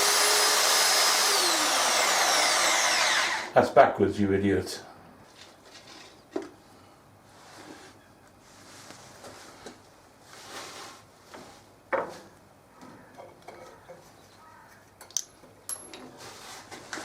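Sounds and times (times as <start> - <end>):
knocks and clatter of parts: 11.9 - 14.0, 15.0 - 17.0.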